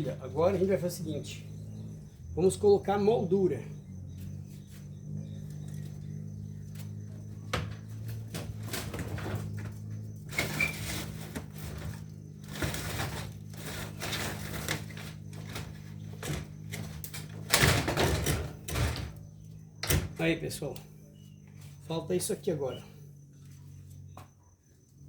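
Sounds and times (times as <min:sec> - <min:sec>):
steady low hum: 0:00.0 - 0:25.0
plastic scraping and clattering: 0:07.5 - 0:19.2.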